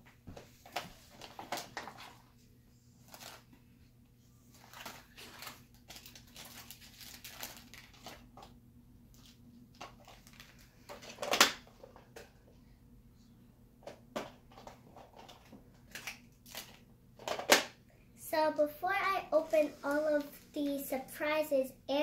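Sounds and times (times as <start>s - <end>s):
plastic and paper wrappers crinkling: 0.6s - 2.3s, 3.0s - 3.5s, 4.5s - 8.5s, 9.1s - 11.7s, 15.0s - 17.4s, 18.8s - 20.8s.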